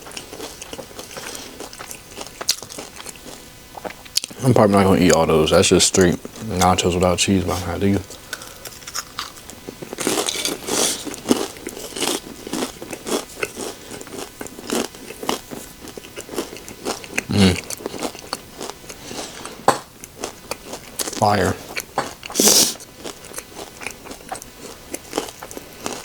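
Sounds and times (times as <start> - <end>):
crunchy chewing of chips: 0.0 - 26.0
person humming: 17.3 - 17.7.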